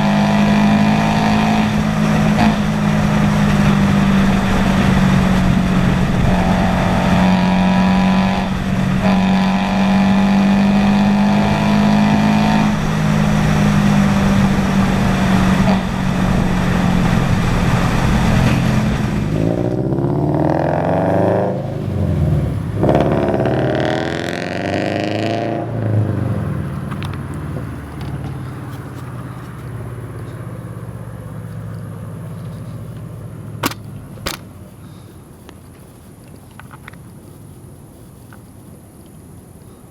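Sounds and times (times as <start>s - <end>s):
car engine revving: 0.0s - 35.1s
sharp clicks: 26.2s - 39.7s.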